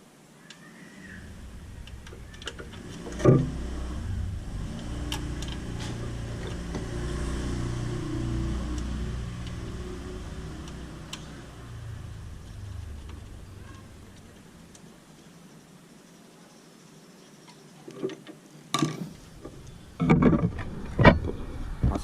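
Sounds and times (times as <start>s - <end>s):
steady low rumble: 1.0s - 15.2s, 19.2s - 22.0s.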